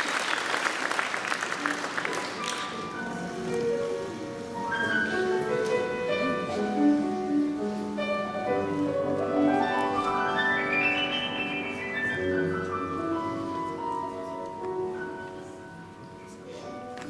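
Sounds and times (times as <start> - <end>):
solo piano: 1.7 - 17.0.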